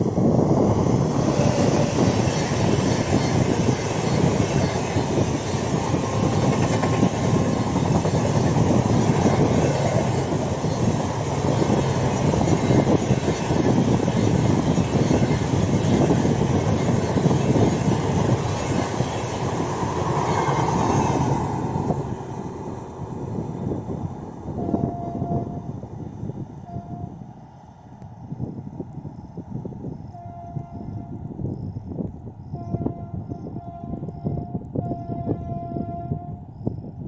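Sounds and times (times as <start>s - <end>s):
train wheels clattering on rails: 0.0s - 22.6s.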